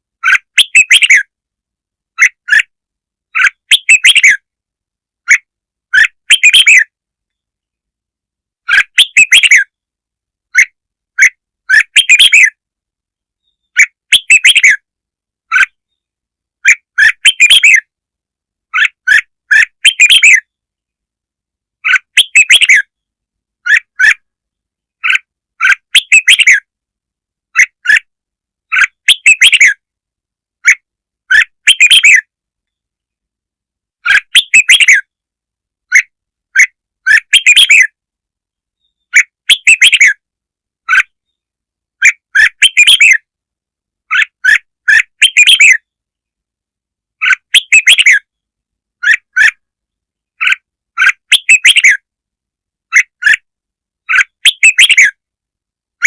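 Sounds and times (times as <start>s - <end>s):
bulbul song chirping: 0.2s - 1.4s, 2.1s - 4.5s, 5.2s - 7.4s, 8.6s - 9.8s, 10.5s - 12.6s, 13.4s - 14.9s, 15.5s - 17.9s, 18.7s - 20.6s, 21.8s - 26.7s, 28.7s - 29.8s, 30.6s - 32.9s, 34.0s - 35.2s, 35.9s - 38.0s, 38.8s - 40.2s, 40.8s - 43.3s, 44.1s - 46.0s, 47.2s - 52.1s.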